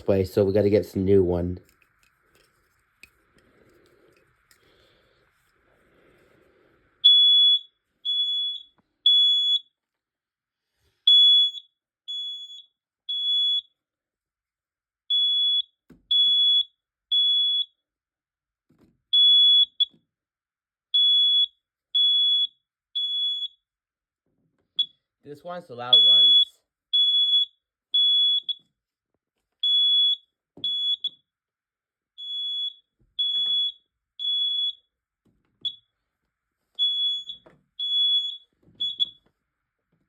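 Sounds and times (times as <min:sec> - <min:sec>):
smoke alarm beeping: 0:07.0 - 0:09.8, 0:11.1 - 0:13.8, 0:15.1 - 0:17.8, 0:19.1 - 0:20.0, 0:20.9 - 0:23.7, 0:24.8 - 0:25.1, 0:25.8 - 0:28.7, 0:29.6 - 0:31.3, 0:32.2 - 0:35.0, 0:35.6 - 0:35.9, 0:36.7 - 0:39.3.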